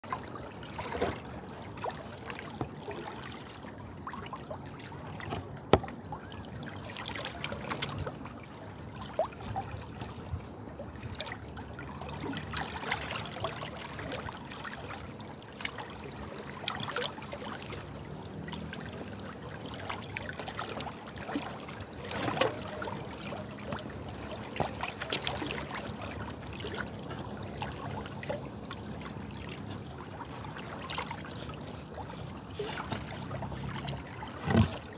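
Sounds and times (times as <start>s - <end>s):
water drips and splashes: 0.0s - 34.9s
water flowing and trickling: 0.0s - 34.9s.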